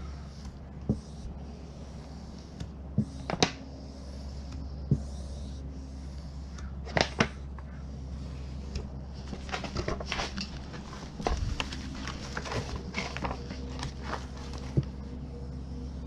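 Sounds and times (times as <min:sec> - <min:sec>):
steady low hum: 0:00.0 - 0:16.0
light rustles: 0:08.7 - 0:15.1.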